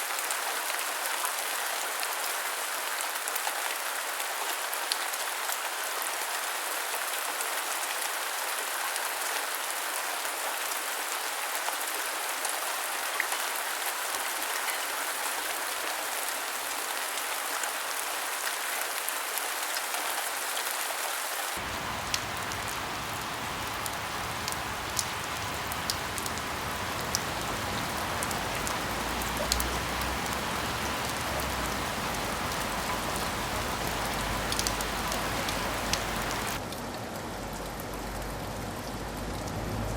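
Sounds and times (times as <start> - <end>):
steady rain hiss: 0.0 - 39.9
raindrop ticks: 21.7 - 38.3.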